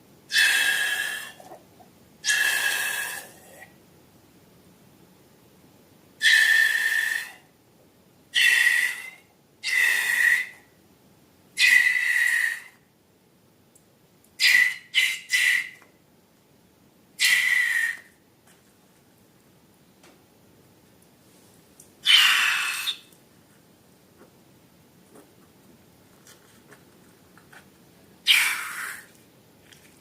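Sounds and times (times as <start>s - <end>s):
hiss: 6.2s - 7.4s, 8.4s - 10.6s, 11.6s - 12.8s, 17.2s - 18.1s.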